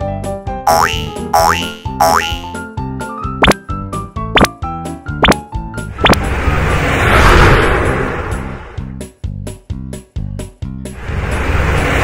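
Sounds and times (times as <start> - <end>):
background music: 0.0 - 6.0
burst of rushing noise: 6.0 - 8.8.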